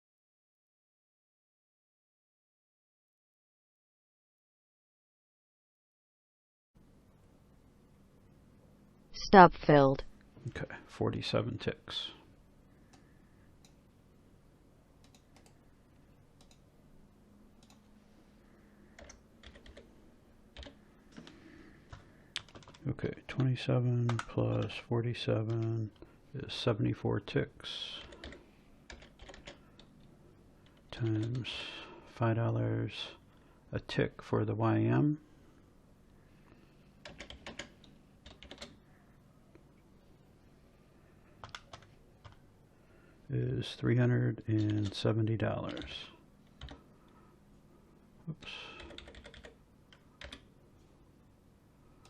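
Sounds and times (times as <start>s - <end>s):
keyboard typing: 15.0s - 15.6s, 16.4s - 16.6s, 19.0s - 19.9s, 20.6s - 22.8s, 27.9s - 30.0s, 37.0s - 38.8s, 41.4s - 42.4s, 44.5s - 45.0s, 45.6s - 46.0s, 46.6s - 46.8s, 48.4s - 50.5s.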